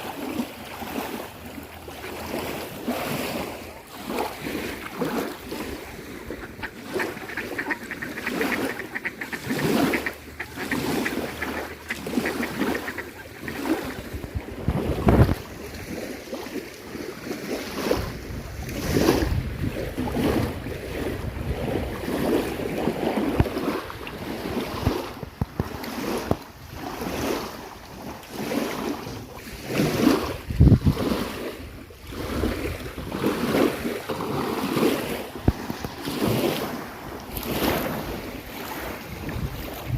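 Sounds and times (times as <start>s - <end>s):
waves washing onto shore: 0.0s - 39.9s
wind gusting on microphone: 4.0s - 16.1s, 17.5s - 39.9s
waterfowl calling: 4.9s - 14.4s.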